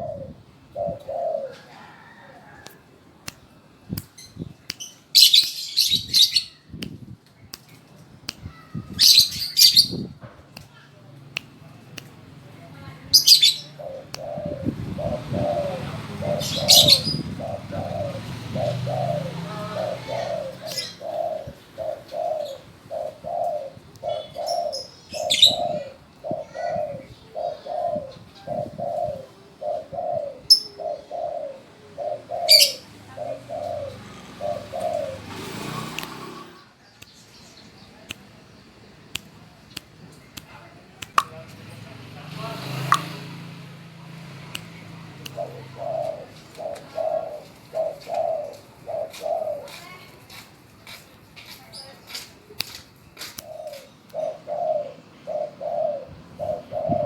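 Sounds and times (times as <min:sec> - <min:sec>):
dove cooing: 0:00.0 - 0:02.6, 0:13.1 - 0:36.6, 0:45.0 - 0:50.1, 0:53.4 - 0:57.0.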